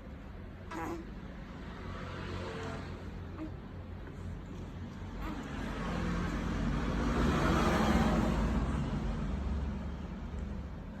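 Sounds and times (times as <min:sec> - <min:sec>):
road vehicle passing by: 0:00.1 - 0:11.0.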